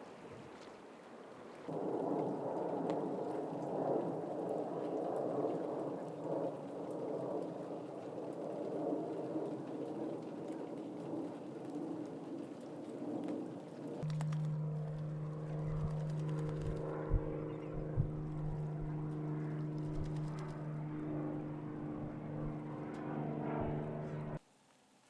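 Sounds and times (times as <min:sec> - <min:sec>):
motor humming: 0:14.0 - 0:24.4
low thumps: 0:15.7 - 0:19.0.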